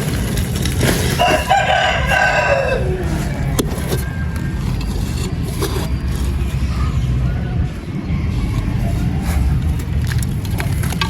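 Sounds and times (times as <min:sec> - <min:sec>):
steady low rumble: 0:00.0 - 0:11.0
rooster crowing: 0:01.2 - 0:04.3.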